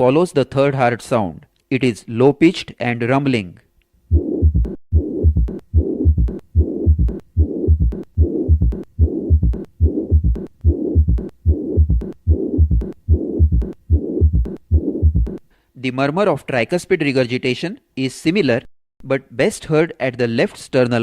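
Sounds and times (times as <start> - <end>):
blowing heart murmur: 4.1 - 15.4
heartbeat through stethoscope: 4.1 - 15.4
low rumbling heart murmur: 4.1 - 15.4.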